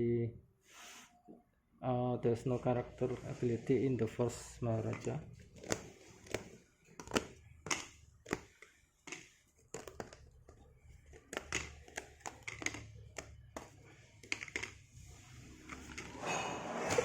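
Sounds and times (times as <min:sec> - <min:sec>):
cardboard cards clicking and tapping: 0:04.8 - 0:15.0.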